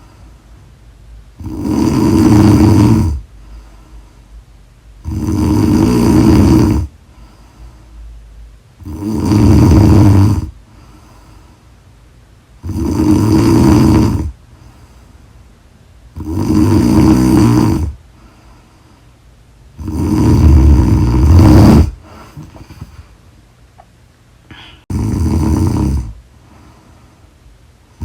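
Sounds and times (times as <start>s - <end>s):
woman snoring: 1.4s - 3.2s, 5.0s - 6.9s, 8.8s - 10.6s, 12.6s - 14.4s, 16.2s - 18.0s, 19.8s - 22.9s, 24.5s - 26.2s.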